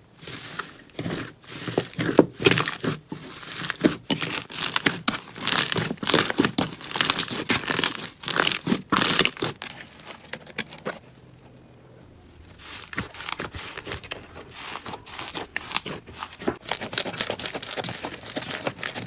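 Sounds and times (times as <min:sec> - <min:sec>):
slime crackling and popping: 0:04.1 - 0:11.0, 0:12.4 - 0:19.0.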